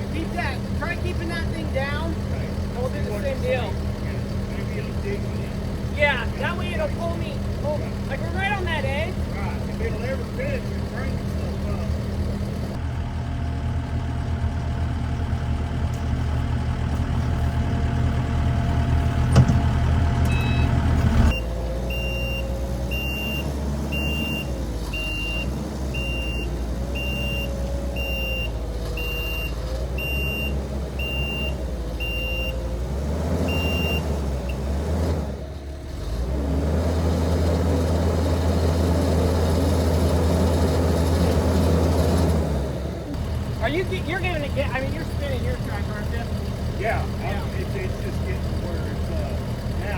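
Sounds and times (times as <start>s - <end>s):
skid steer engine running: 0.0s - 49.9s
tractor diesel engine under load: 0.0s - 49.9s
reversing alarm beeping: 20.2s - 32.7s, 33.5s - 34.6s.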